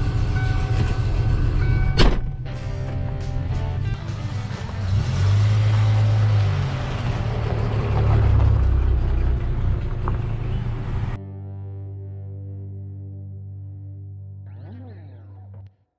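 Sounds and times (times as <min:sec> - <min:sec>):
car engine deep rumble: 0:00.0 - 0:11.2.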